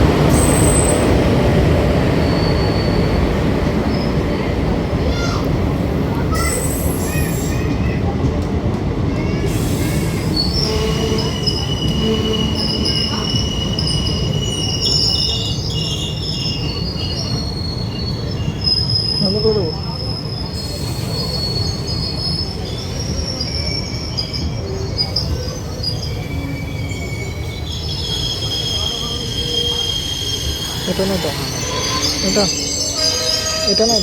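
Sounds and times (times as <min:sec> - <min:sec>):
train rumbling on track: 0:00.0 - 0:34.0
wheel squeal: 0:02.2 - 0:03.3, 0:09.5 - 0:34.0.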